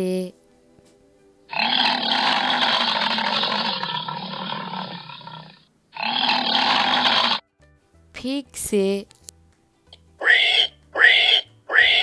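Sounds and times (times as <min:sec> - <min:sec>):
bison bellowing: 0:01.5 - 0:07.4, 0:10.2 - 0:12.0.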